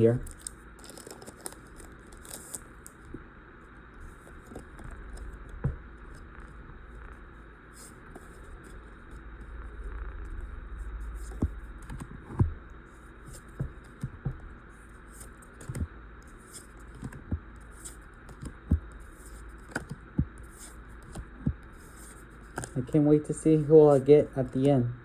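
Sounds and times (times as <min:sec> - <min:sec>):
soft rustling of card pack: 0:00.0 - 0:03.2, 0:13.0 - 0:24.8.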